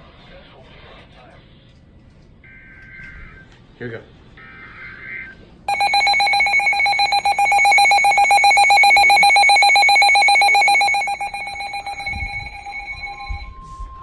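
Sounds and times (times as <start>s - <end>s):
weather radio alert tone: 5.7s - 13.5s.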